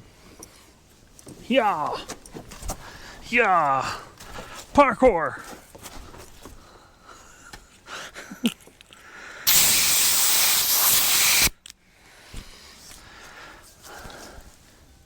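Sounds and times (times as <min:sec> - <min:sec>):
compressed air hissing from hose: 0:09.5 - 0:11.6.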